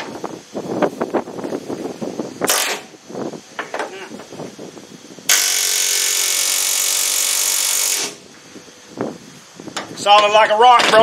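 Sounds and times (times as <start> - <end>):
power tool running: 5.2 - 8.4.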